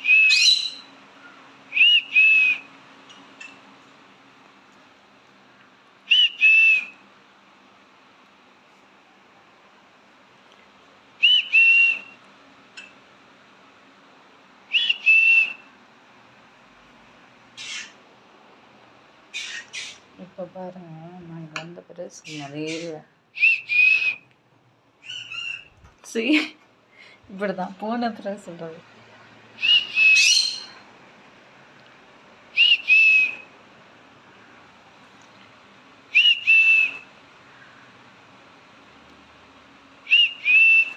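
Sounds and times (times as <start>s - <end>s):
parrot whistling: 0.0s - 0.9s, 1.7s - 2.7s, 6.1s - 7.0s, 11.2s - 12.2s, 14.7s - 15.7s, 19.4s - 20.0s, 22.3s - 24.2s, 25.0s - 25.7s, 29.6s - 30.8s, 32.6s - 33.5s, 36.1s - 37.1s, 40.1s - 40.9s
parrot squawk: 0.3s - 0.8s, 17.6s - 18.0s, 19.3s - 20.1s, 25.0s - 25.7s, 29.7s - 30.7s.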